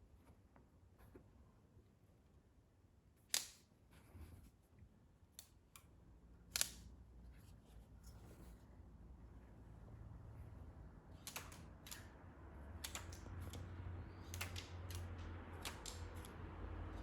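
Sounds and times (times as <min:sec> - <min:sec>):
faint mechanical clicks: 0:11.1 - 0:17.0.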